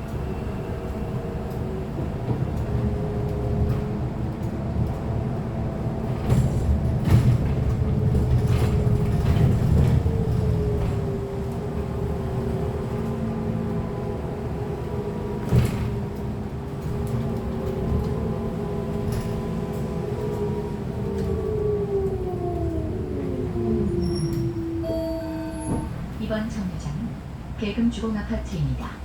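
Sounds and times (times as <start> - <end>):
bus road rumble and hum: 0.0 - 29.0
tone sliding down in pitch: 22.6 - 26.0.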